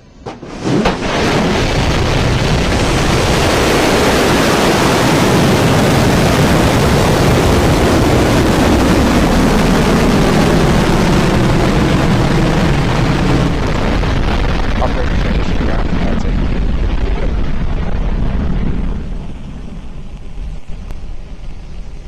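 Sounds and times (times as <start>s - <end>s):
rocket engines roaring: 0.0s - 22.0s.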